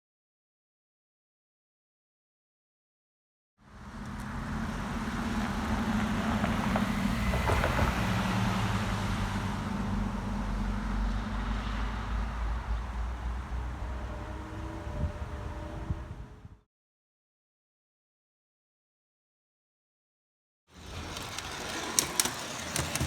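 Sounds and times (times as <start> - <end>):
diesel locomotive engine running: 3.6 - 16.6.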